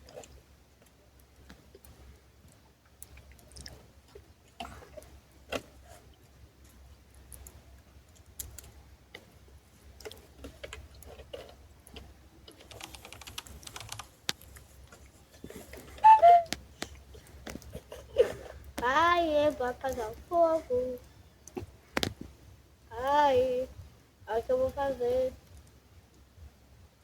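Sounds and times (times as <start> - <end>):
campfire crackling and popping: 16.5 - 22.4.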